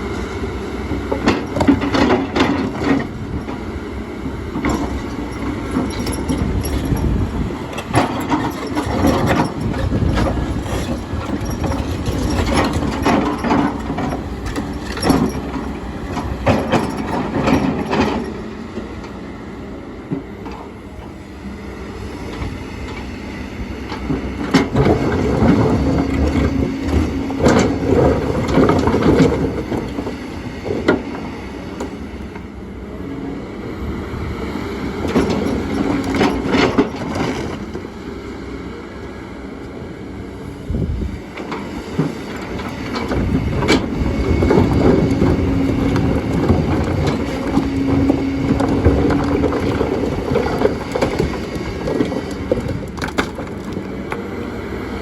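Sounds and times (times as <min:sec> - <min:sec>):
excavator diesel engine: 0:00.0 - 0:55.0
rocks clattering and thudding: 0:43.7 - 0:53.9.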